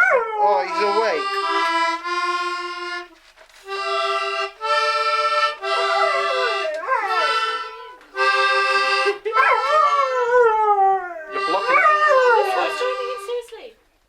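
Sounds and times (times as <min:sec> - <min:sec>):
dog howling: 0:00.0 - 0:00.8, 0:05.6 - 0:07.8, 0:09.4 - 0:12.9
free-reed instrument notes: 0:00.5 - 0:13.7.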